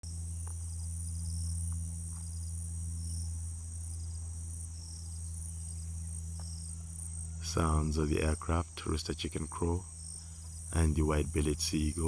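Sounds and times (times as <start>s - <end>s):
crickets trilling: 0.0s - 12.0s
steady low hum: 0.0s - 12.0s
short insect chirps: 0.1s - 12.0s.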